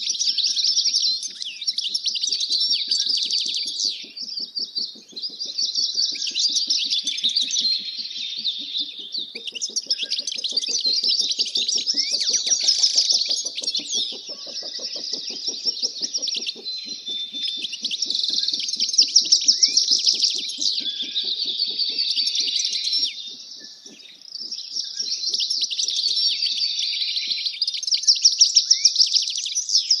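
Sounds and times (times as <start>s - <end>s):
small birds chirping and trilling: 0.0s - 30.0s.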